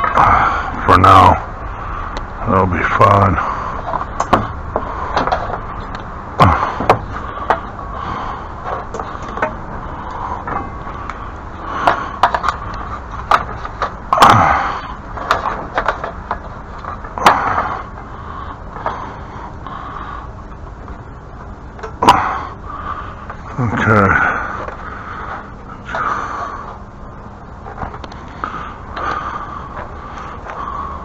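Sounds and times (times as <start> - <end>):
objects knocking and clacking: 11.8 - 14.4, 15.2 - 17.6.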